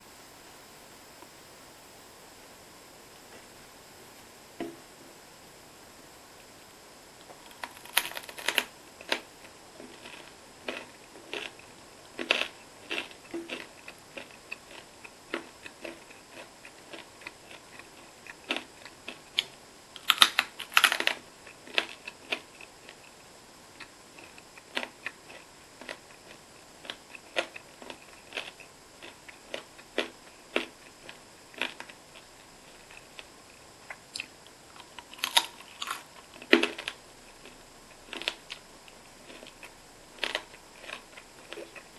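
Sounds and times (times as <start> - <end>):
food crunching and chewing: 7.2 - 41.9.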